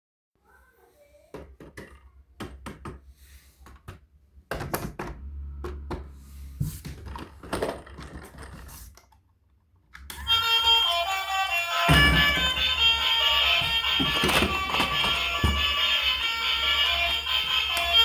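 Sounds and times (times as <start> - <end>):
objects knocking and scraping: 1.4 - 9.2, 11.9 - 15.8.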